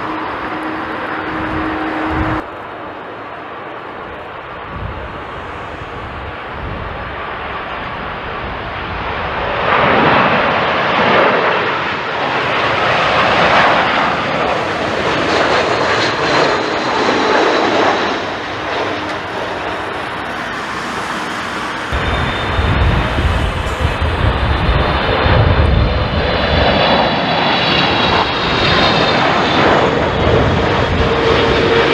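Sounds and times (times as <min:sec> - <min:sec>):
jet engines rushing: 0:00.0 - 0:31.9
deep low rumble: 0:14.4 - 0:26.9.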